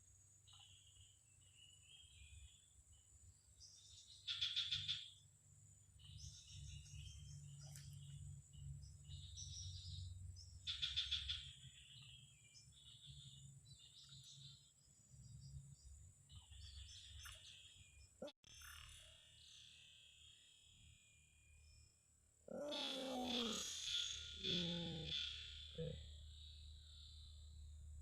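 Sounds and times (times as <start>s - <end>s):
faint birds calling: 5.9s - 21.8s, 22.5s - 27.6s
loud bird trills: 22.5s - 26.5s
high insect drone: 22.5s - 27.7s.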